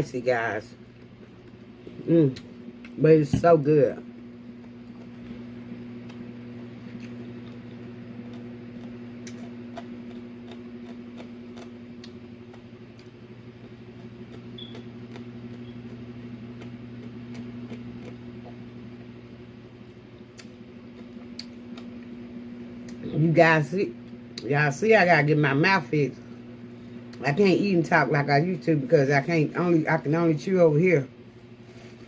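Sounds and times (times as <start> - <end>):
steady motor hum: 0.0 - 32.0
chewing and mouth clicks: 6.9 - 18.6, 20.3 - 22.1.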